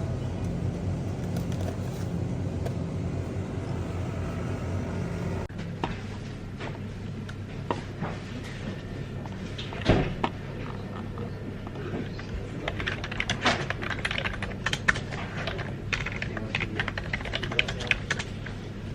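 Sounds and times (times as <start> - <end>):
low vehicle rumble: 0.0 - 5.5.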